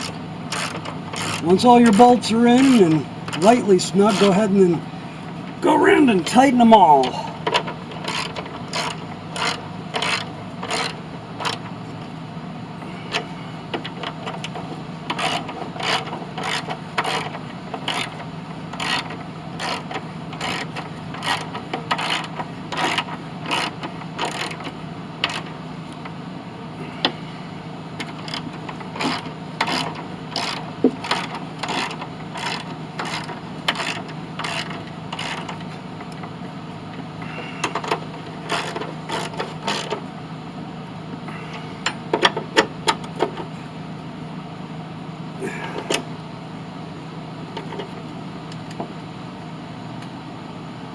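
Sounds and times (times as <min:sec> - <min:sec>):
ratchet wrench clicking: 0:00.0 - 0:01.4, 0:07.5 - 0:11.6, 0:15.1 - 0:25.5, 0:28.0 - 0:35.6, 0:37.6 - 0:40.0.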